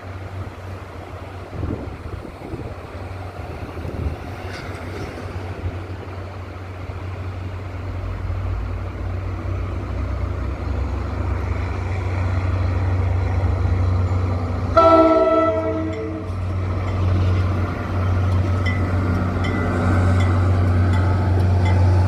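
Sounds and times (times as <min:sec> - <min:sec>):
diesel locomotive engine drone: 0:00.0 - 0:22.0
locomotive air horn: 0:14.7 - 0:16.4.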